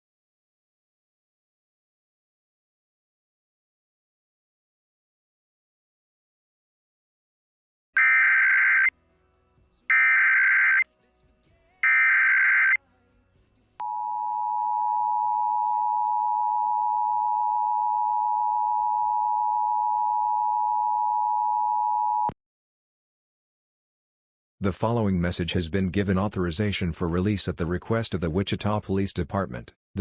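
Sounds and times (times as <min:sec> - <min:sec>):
screeching data bursts: 0:08.0 - 0:08.9, 0:09.9 - 0:10.8
two-tone attention signal: 0:08.0 - 0:08.9, 0:09.9 - 0:10.8, 0:11.8 - 0:12.8.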